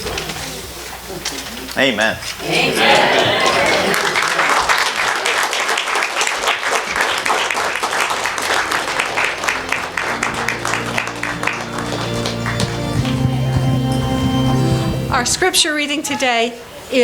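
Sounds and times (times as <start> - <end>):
audience applauding: 2.6 - 15.6
instrumental music with sustained chords: 8.2 - 15.4.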